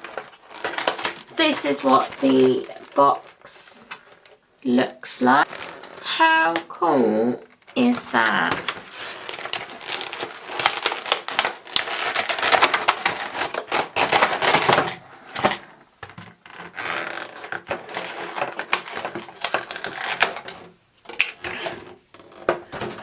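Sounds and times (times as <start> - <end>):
cardboard and plastic packaging rustling: 0.0 - 23.0.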